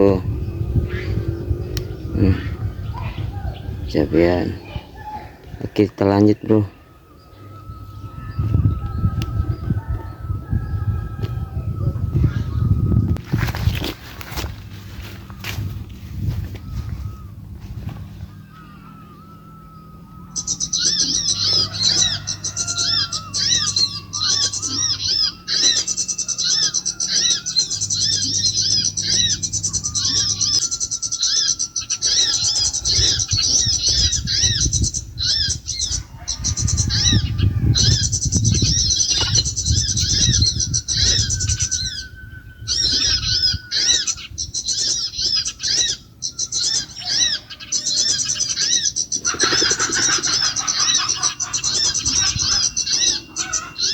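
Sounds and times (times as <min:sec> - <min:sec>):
low rumble: 0:00.0 - 0:05.7, 0:06.8 - 0:23.0
small birds chirping trills: 0:00.0 - 0:53.9.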